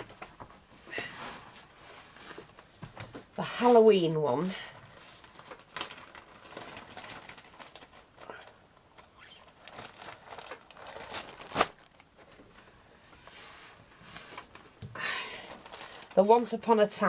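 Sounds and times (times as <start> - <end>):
paper packets rustling: 3.7 - 12.7, 15.4 - 16.5.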